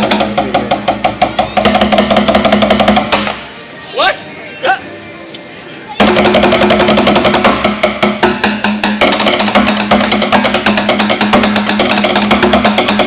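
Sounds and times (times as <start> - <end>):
loud music with fast percussion: 0.0 - 3.4, 6.0 - 13.0.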